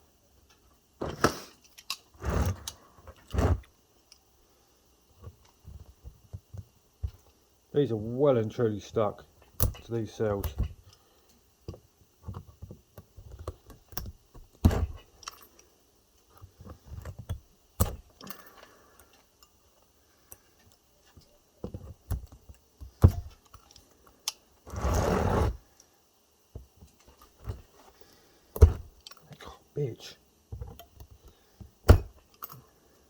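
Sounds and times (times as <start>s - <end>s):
harsh rasping noise: 24.7s - 25.6s.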